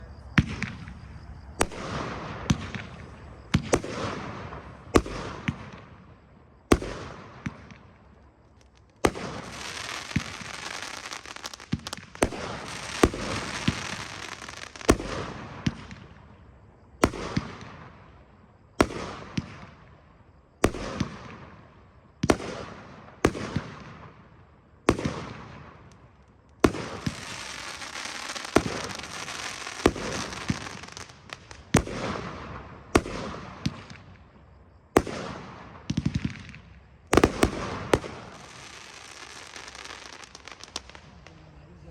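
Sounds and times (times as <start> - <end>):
fireworks bangs: 0.0 - 16.3, 20.6 - 41.9
fireworks crackling: 6.7 - 16.2, 24.9 - 41.9.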